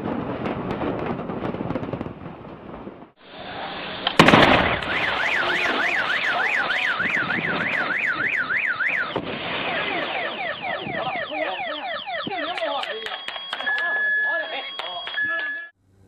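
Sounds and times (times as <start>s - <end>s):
loud bang: 2.8s - 11.1s
car alarm warbling: 4.6s - 15.8s.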